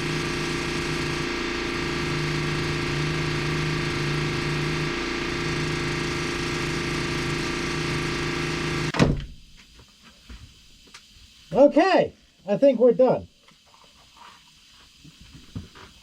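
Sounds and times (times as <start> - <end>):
workshop machinery motor drone: 0.0 - 9.0.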